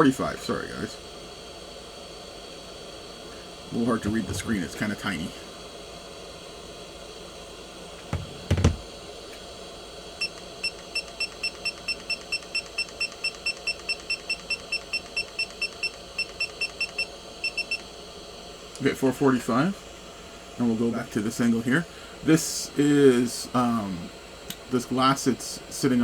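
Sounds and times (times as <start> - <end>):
hot air blower hissing: 0.0 - 26.0
knocks: 8.1 - 8.8.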